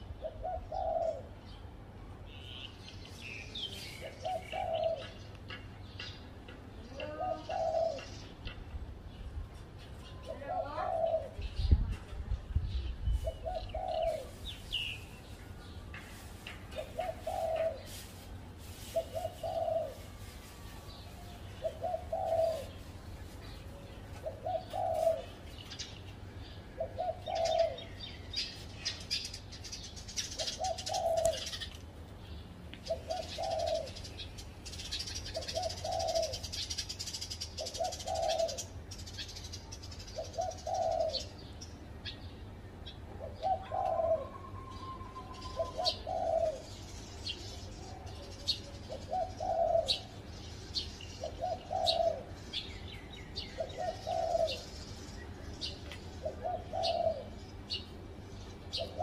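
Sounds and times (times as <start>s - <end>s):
small birds chirping: 0.0s - 59.0s
dove cooing: 0.2s - 1.4s, 3.8s - 5.6s, 7.0s - 8.3s, 10.2s - 11.7s, 13.2s - 14.7s, 16.8s - 20.4s, 21.3s - 25.8s, 26.7s - 28.1s, 30.2s - 31.8s, 32.8s - 39.3s, 40.1s - 41.5s, 43.1s - 46.9s, 47.9s - 50.3s, 51.2s - 52.6s, 53.4s - 54.8s, 55.6s - 57.9s, 58.6s - 59.0s.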